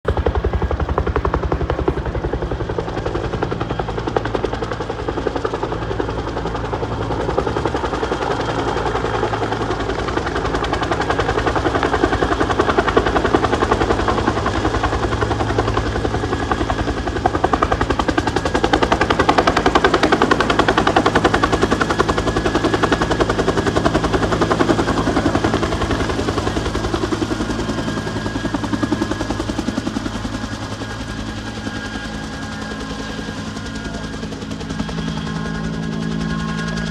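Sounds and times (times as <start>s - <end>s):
helicopter rotor beating: 0.0s - 36.9s.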